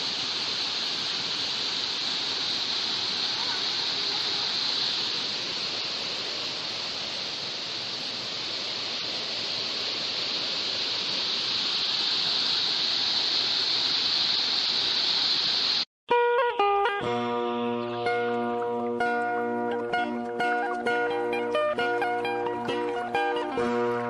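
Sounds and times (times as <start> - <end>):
waterfall rushing: 0.0 - 15.8.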